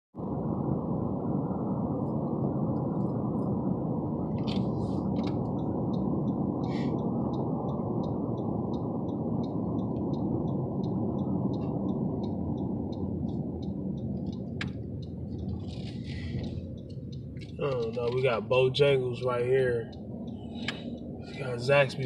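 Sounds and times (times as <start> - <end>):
car road and engine noise: 0.1 - 22.0
light ticking: 4.4 - 22.0.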